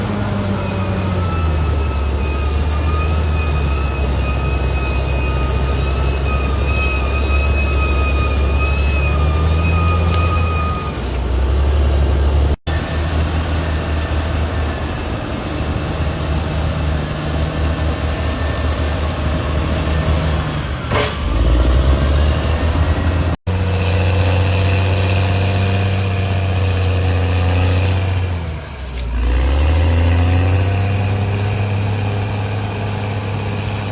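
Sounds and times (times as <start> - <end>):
bulldozer diesel engine droning: 0.0 - 33.9
sharp clank or squeal: 20.8 - 21.6.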